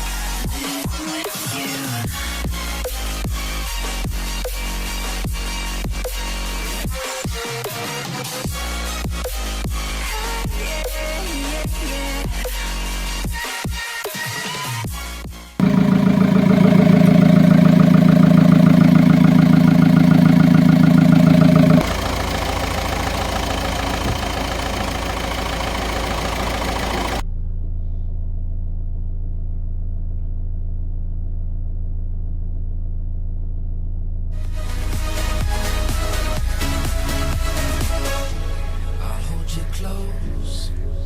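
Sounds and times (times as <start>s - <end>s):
diesel engine running: 15.6s - 27.2s.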